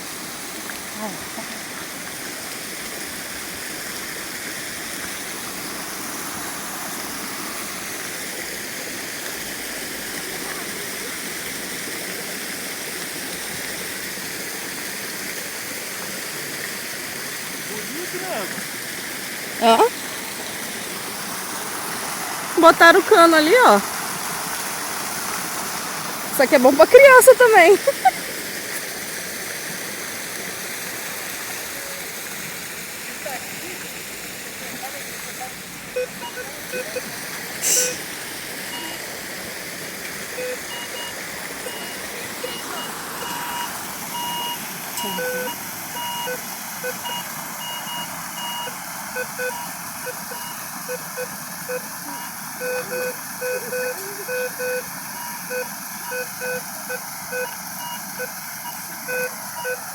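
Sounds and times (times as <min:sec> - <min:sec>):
waterfall roaring: 0:00.0 - 0:59.9
loud hiss: 0:28.7 - 0:49.2
short high beeps: 0:36.0 - 0:37.0, 0:37.6 - 0:39.0, 0:40.4 - 0:59.9.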